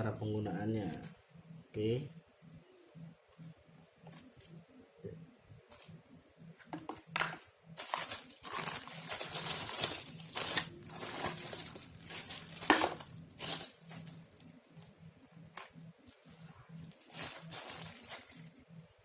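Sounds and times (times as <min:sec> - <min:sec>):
faint low hum: 0:00.0 - 0:19.0
packaging rustling and scraping: 0:07.0 - 0:14.9, 0:15.5 - 0:18.6.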